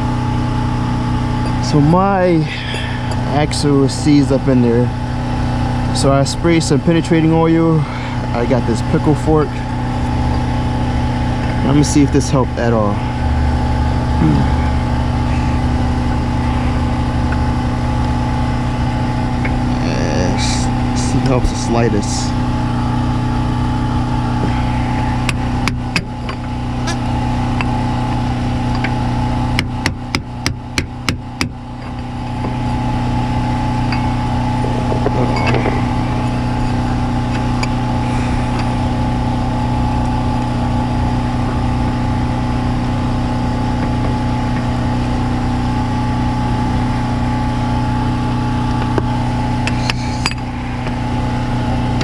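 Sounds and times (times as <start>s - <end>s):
steady mechanical hum: 0.0s - 52.0s.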